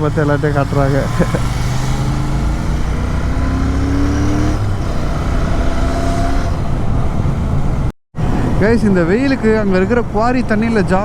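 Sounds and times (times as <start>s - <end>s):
motorcycle engine accelerating: 0.0s - 7.9s
road and wind noise: 0.0s - 11.0s.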